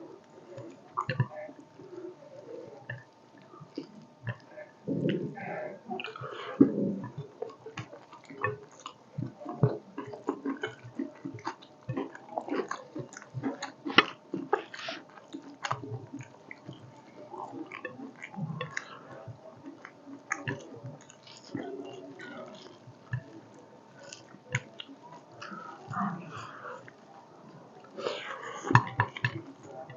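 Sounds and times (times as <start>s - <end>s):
wet chewing: 0.1s - 29.9s
lip smacks: 6.0s - 29.9s.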